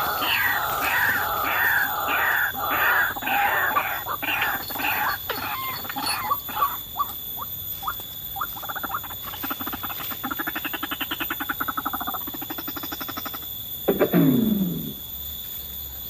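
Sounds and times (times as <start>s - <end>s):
waterhen calling: 0.0s - 10.7s.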